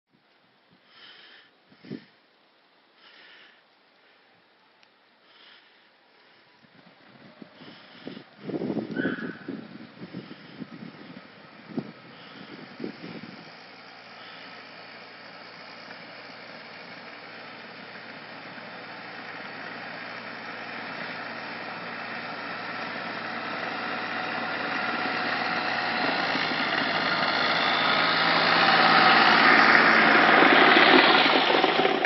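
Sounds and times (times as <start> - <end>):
tractor engine running: 6.7 - 32.0.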